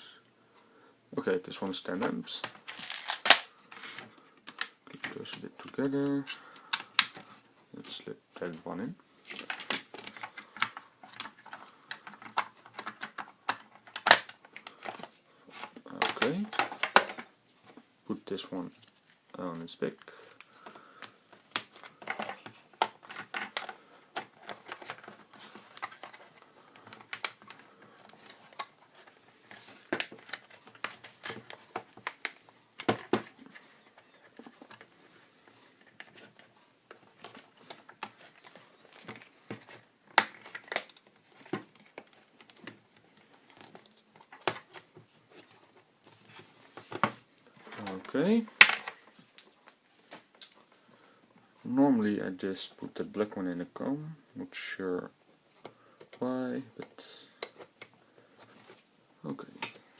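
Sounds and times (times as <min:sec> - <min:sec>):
plastic parts clicking and rustling: 0:02.0 - 0:07.3, 0:09.2 - 0:17.4, 0:18.6 - 0:50.7.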